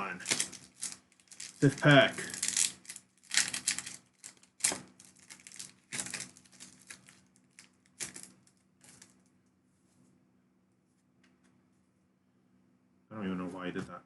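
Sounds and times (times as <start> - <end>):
foil wrapper tearing and crinkling: 0.0 - 9.2.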